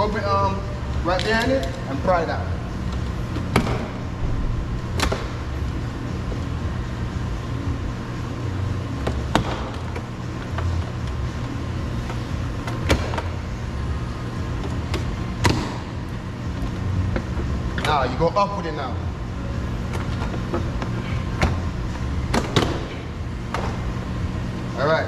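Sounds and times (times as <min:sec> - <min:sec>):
low rumble: 0:02.4 - 0:07.9.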